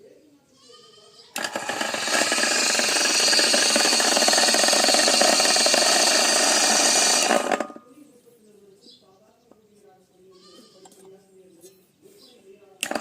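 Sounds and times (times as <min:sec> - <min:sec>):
mixer grinder motor whirring: 0:01.4 - 0:07.8.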